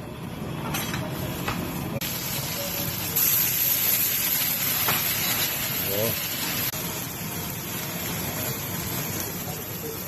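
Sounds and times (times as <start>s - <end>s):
meat sizzling in a pan: 2.0s - 10.0s.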